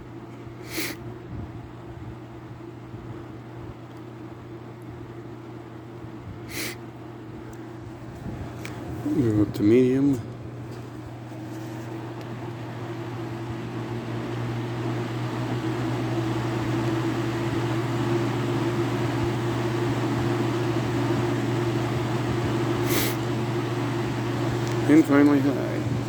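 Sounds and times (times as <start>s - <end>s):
box fan motor humming: 0.0s - 26.0s.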